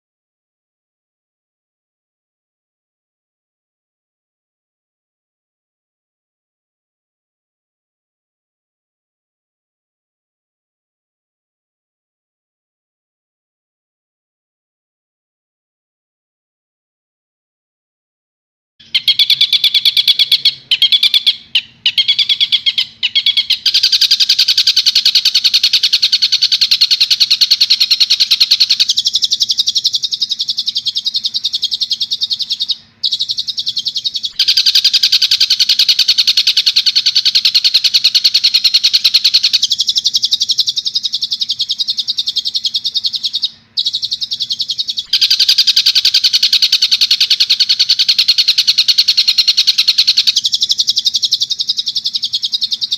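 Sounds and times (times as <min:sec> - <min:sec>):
faint low hum: 0:18.8 - 0:52.9.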